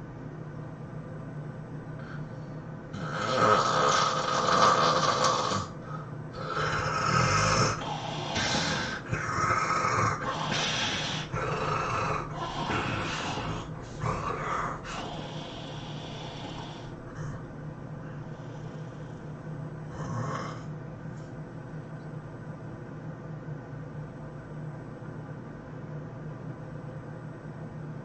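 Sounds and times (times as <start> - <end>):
person snoring heavily: 2.9 - 17.5, 19.9 - 20.7.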